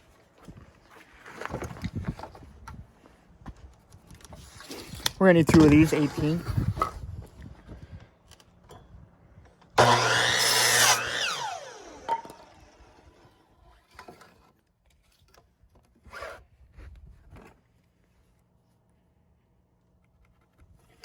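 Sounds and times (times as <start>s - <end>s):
power saw cutting board: 9.8s - 13.5s
saw motor winding down: 9.8s - 13.5s.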